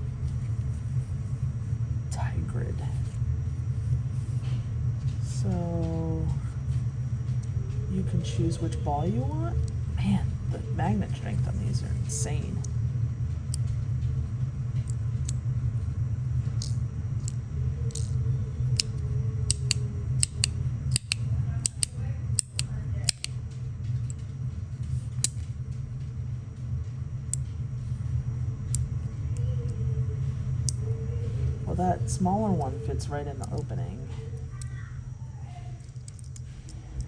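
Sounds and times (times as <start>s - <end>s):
steady low hum: 0.0s - 37.0s
metal balls clicking and snapping: 16.5s - 24.3s, 25.1s - 25.8s, 32.5s - 34.8s, 35.8s - 37.0s.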